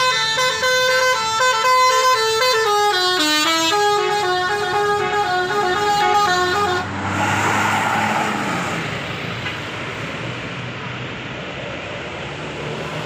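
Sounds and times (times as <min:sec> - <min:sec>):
musical air horn tune: 0:00.0 - 0:07.0
bus engine rumble: 0:00.0 - 0:13.0
rush of noise: 0:06.8 - 0:12.2.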